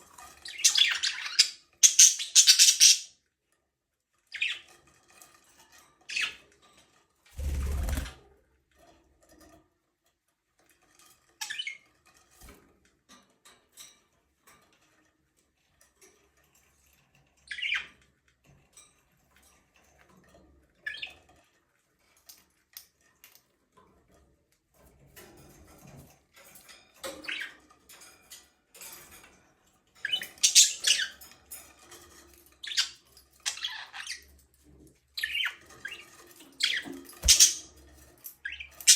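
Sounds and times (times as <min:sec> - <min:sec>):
budgerigars chirping: 0:00.5 - 0:03.1, 0:30.1 - 0:31.1, 0:36.6 - 0:37.7.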